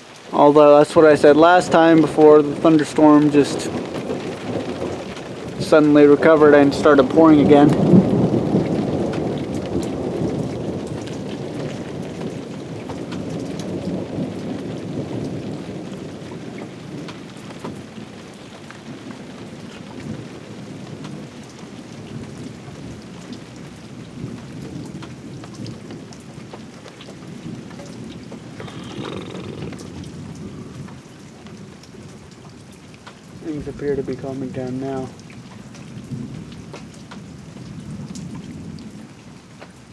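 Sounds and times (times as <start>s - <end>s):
raindrop ticks: 0.0s - 39.9s
steady rain: 0.0s - 39.9s
thunder rumbling: 0.8s - 17.1s, 27.3s - 31.8s.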